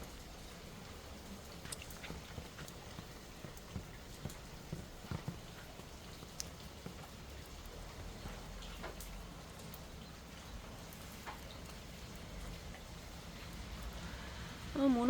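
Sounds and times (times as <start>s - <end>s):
faint rain hiss: 0.0s - 15.0s
raindrops ticking and tapping: 0.0s - 15.0s
water drips: 0.0s - 15.0s.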